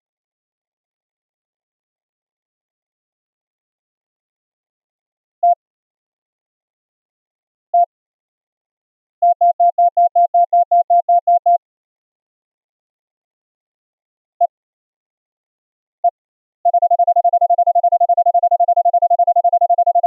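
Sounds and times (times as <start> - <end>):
morse code beeps: 16.7 - 20.0.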